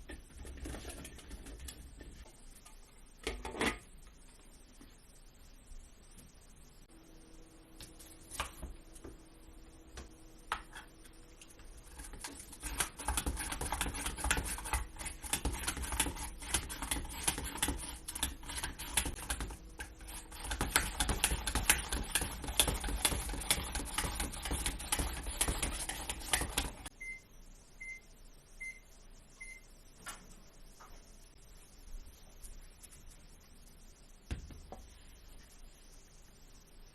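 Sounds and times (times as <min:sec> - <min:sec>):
microwave oven beeps: 0:26.9 - 0:29.8.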